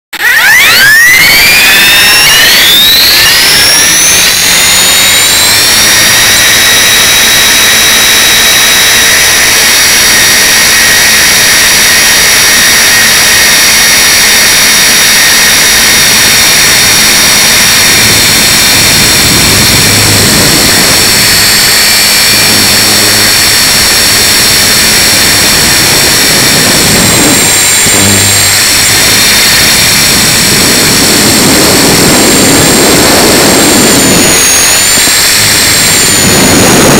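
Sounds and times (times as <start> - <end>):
helicopter motor whine: 0.2 - 36.9
wind buffeting: 16.1 - 36.9.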